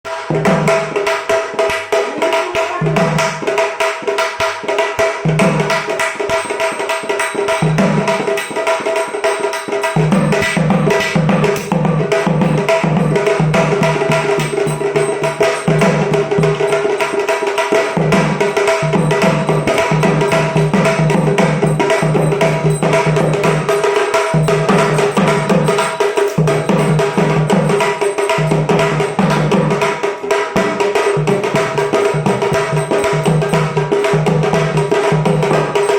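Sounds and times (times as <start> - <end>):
deep drum: 10.0 - 17.2, 17.8 - 30.0.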